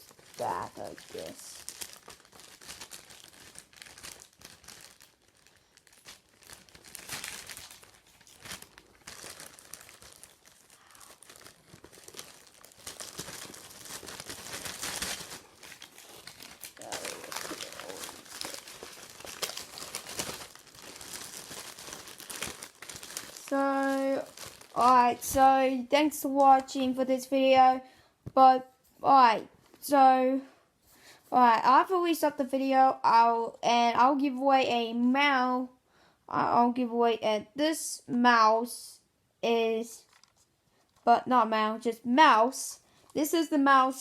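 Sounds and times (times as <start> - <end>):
packaging crinkling: 0.0 - 25.6, 40.0 - 41.0.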